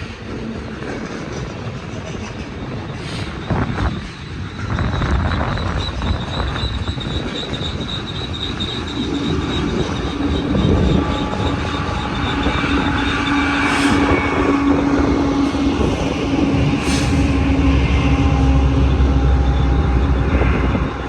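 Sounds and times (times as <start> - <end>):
freight train rolling by: 0.0 - 21.0
wind rumble on microphone: 0.0 - 21.0
high steady squeal: 2.2 - 21.0.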